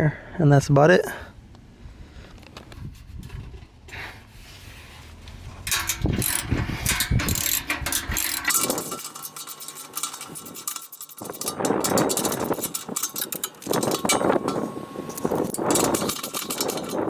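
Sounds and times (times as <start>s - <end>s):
socket ratchet clicking: 5.7s - 17.0s.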